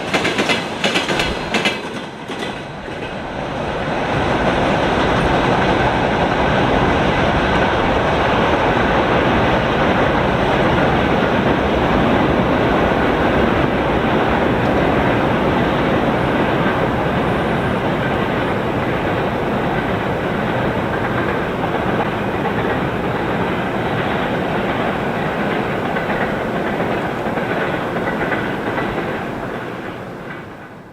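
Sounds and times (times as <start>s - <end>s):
train wheels clattering over rail joints: 0.0s - 3.4s, 14.7s - 30.8s.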